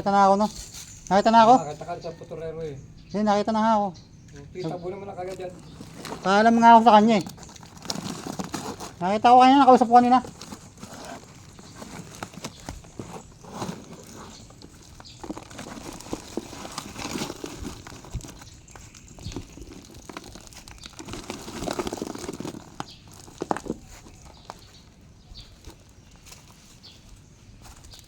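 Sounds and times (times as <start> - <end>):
rustling and crinkling: 0.0 - 2.5, 4.2 - 28.0
knocks and scrapes: 5.3 - 6.6, 10.2 - 24.7.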